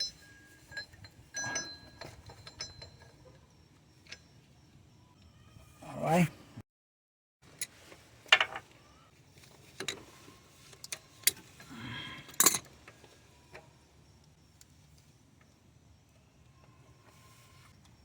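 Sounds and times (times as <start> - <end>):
metal tools clinking: 0.0 - 3.4, 12.3 - 12.7.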